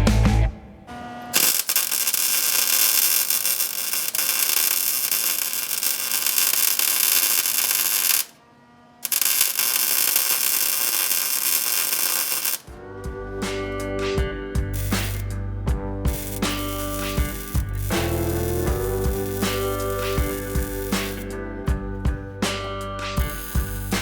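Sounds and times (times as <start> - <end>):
background music: 0.0 - 0.9, 12.4 - 24.0
welder hissing: 1.4 - 8.3, 9.0 - 12.7, 14.8 - 15.4, 16.1 - 21.4, 23.2 - 24.0.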